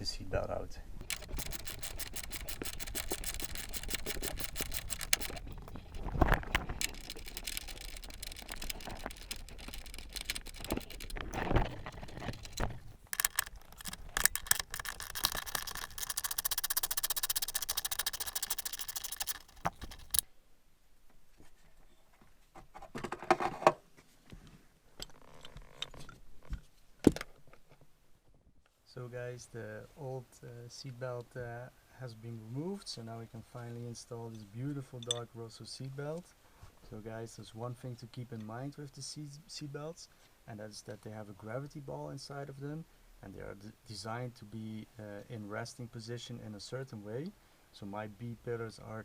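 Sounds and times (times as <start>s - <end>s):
ratchet clicking: 1.0s - 20.2s
rubbing and scraping: 1.0s - 20.2s.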